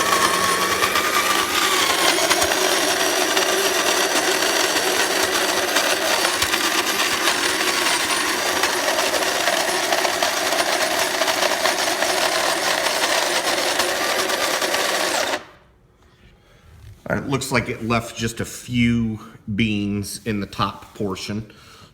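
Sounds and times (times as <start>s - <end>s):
coffee grinder motor hum: 0.0s - 15.6s.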